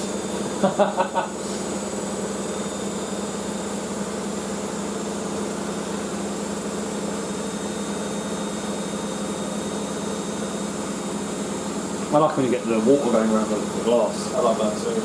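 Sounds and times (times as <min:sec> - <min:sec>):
motor whine: 0:00.0 - 0:15.0
washing machine spinning: 0:00.0 - 0:15.0.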